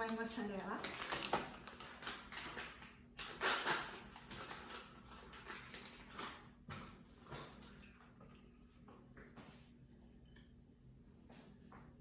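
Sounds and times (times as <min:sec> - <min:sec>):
plastic packaging crinkling: 0:00.0 - 0:06.6.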